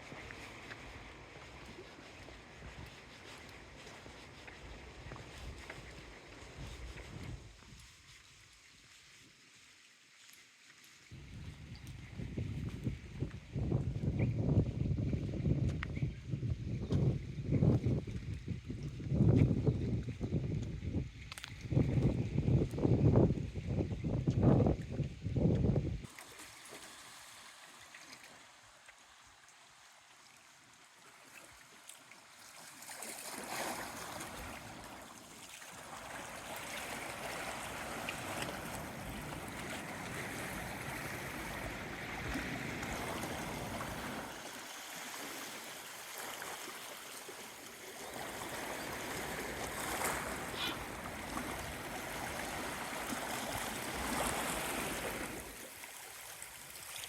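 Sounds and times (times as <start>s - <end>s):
gusty wind buffeting microphone: 11.2s - 26.1s.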